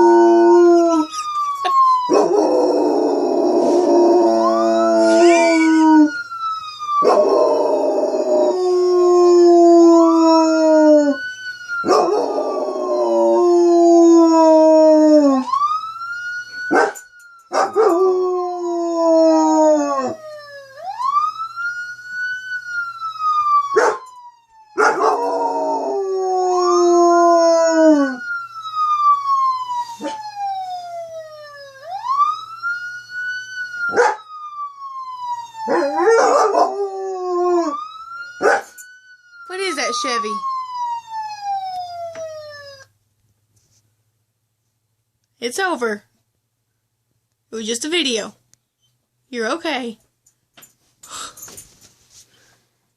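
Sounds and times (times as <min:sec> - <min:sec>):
wailing police siren: 0:00.0 - 0:43.0
dog howling: 0:02.1 - 0:06.1.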